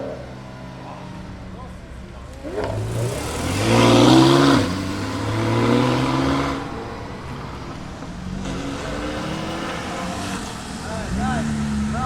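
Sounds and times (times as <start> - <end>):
car engine accelerating hard: 0.0 - 12.0.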